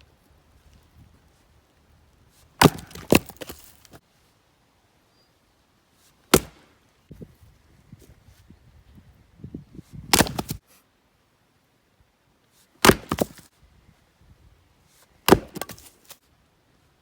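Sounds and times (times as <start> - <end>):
wood cracking: 2.1 - 4.0, 10.1 - 10.6, 12.8 - 13.5, 15.3 - 16.2
axe chopping firewood: 2.6 - 4.0, 6.3 - 6.7, 10.1 - 10.6, 12.8 - 13.5, 15.2 - 16.2.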